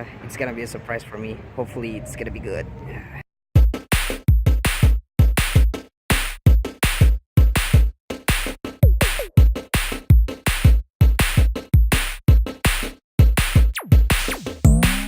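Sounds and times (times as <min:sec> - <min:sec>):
electronic drum-machine beat: 0:03.6 - 0:15.0.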